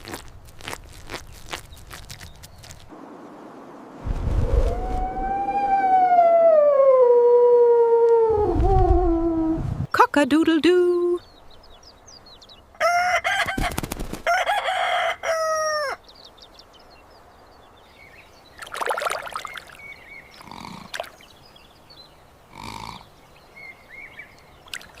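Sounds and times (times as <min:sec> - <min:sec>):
rooster crowing: 0:12.8 - 0:16.0.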